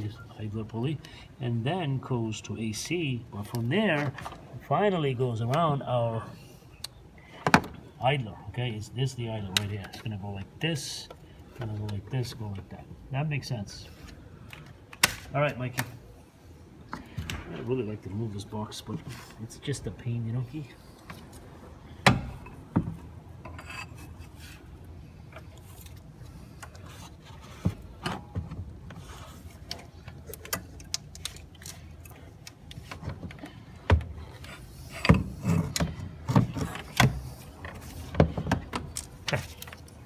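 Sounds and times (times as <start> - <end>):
belt rubbing and scraping: 25.6 - 28.0, 28.9 - 30.3, 34.2 - 38.2.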